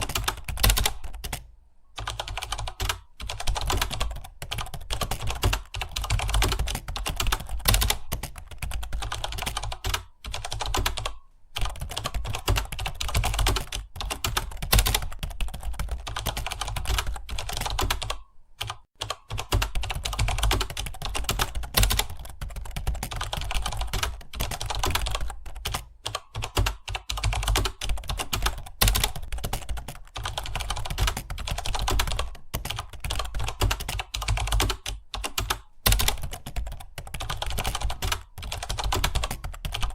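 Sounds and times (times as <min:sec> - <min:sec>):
fast keyboard typing: 0:00.0 - 0:39.9.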